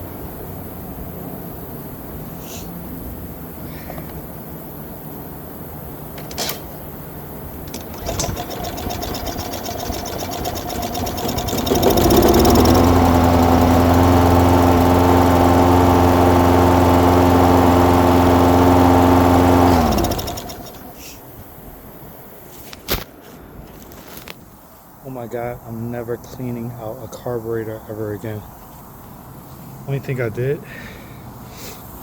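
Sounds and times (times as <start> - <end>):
lawn mower engine cranking: 7.6 - 21.2
lawn mower engine running: 7.6 - 21.2.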